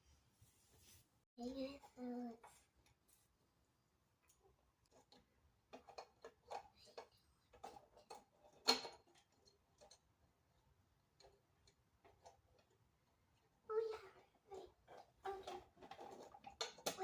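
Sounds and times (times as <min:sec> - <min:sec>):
plastic toy pieces clicking: 0:04.9 - 0:10.0, 0:14.9 - 0:17.0.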